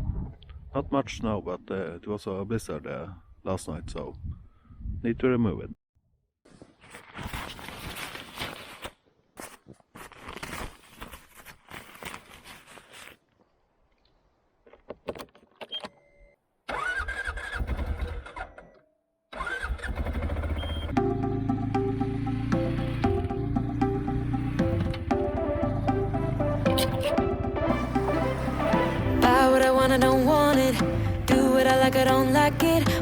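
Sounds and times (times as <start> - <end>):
atv engine starting and running: 16.7 - 33.0
background music: 21.0 - 33.0.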